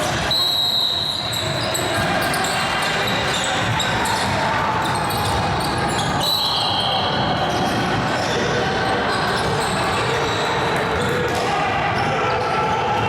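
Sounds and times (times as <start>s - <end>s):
shoe squeaks: 0.4s - 4.2s, 4.8s - 8.4s.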